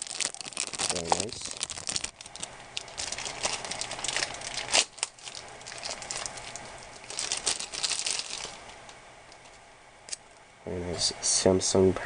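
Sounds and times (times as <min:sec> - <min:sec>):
plastic packaging crinkling: 0:00.0 - 0:09.6.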